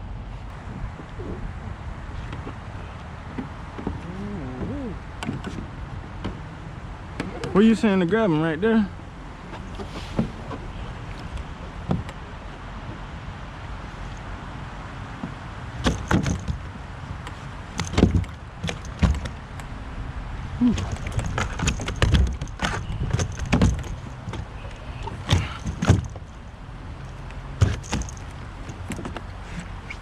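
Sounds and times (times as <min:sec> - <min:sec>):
steady low background noise: 0:04.9 - 0:30.0
gear knocking against kayak: 0:09.5 - 0:12.2, 0:15.1 - 0:19.7, 0:20.6 - 0:26.4, 0:27.0 - 0:30.0.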